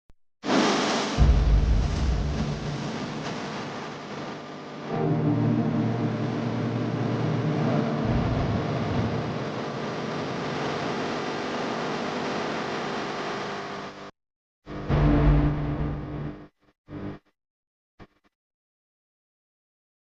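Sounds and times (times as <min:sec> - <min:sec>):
rumbling wash of sound: 0:01.0 - 0:04.5
music of held low notes: 0:04.8 - 0:09.3.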